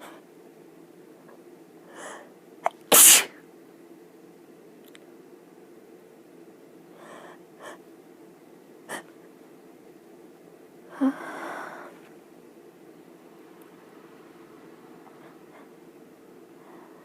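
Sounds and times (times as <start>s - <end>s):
faint steady hum: 0.0s - 17.0s
person breathing: 1.8s - 2.3s, 6.9s - 7.8s, 10.9s - 12.0s, 16.6s - 17.0s
person sneezing: 2.6s - 3.4s.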